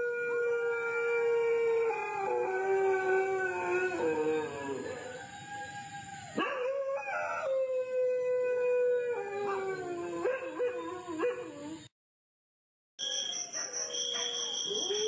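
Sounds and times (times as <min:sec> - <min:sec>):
dog howling: 0:00.0 - 0:11.8.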